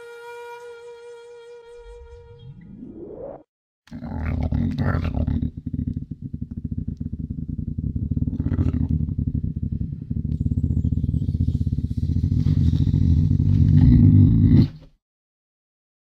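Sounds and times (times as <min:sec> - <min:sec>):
lynx growling: 0:03.9 - 0:14.9.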